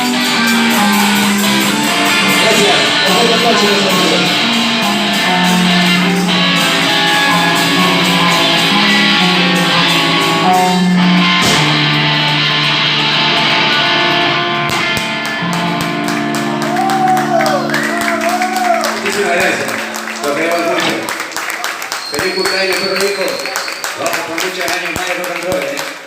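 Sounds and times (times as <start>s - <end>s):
drum hits: 0.0s - 13.8s
electric guitar chords strummed: 0.0s - 23.2s
live rock band: 0.0s - 26.0s.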